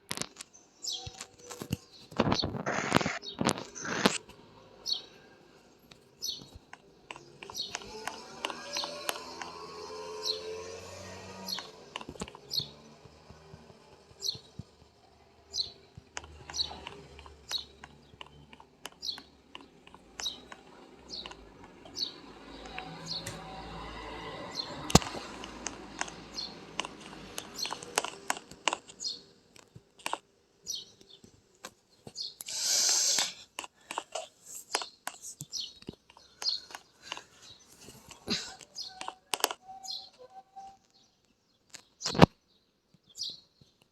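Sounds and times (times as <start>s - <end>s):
small bird chirping: 0.0s - 43.9s
short hiss: 32.5s - 33.4s.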